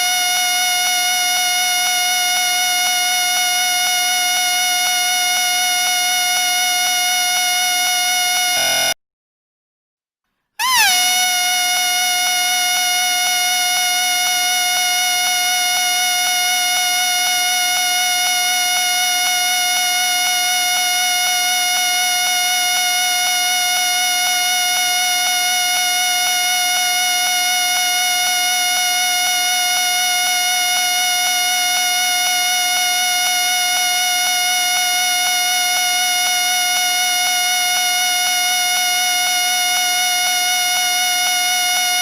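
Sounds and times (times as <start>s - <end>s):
whistle high tone: 8.5s - 9.0s, 10.6s - 13.4s.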